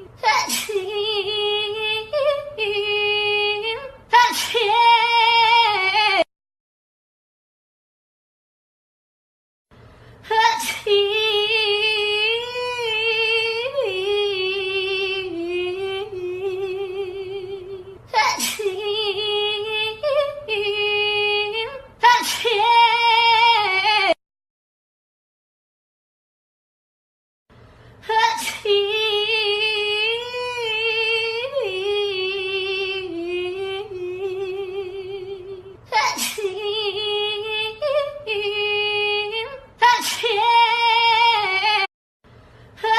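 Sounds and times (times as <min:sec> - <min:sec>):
high voice singing with vibrato: 0:10.3 - 0:24.2, 0:28.0 - 0:41.9.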